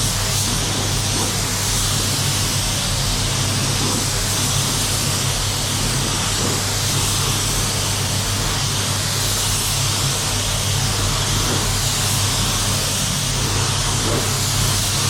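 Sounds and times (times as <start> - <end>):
fans humming: 0.0 - 15.0
paint spray gun hissing: 0.0 - 15.0.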